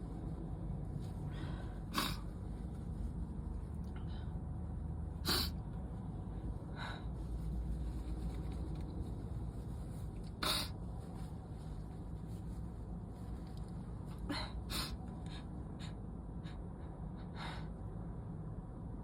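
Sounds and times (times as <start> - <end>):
low steady hum: 0.0 - 19.0
person sneezing: 1.9 - 2.3, 5.2 - 5.6, 10.4 - 10.7.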